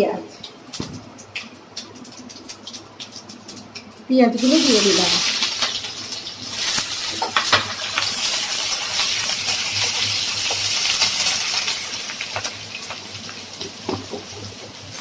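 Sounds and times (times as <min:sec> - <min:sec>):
sharp crackles and clicks: 0:00.4 - 0:15.0
onions sizzling in hot oil: 0:01.1 - 0:15.0.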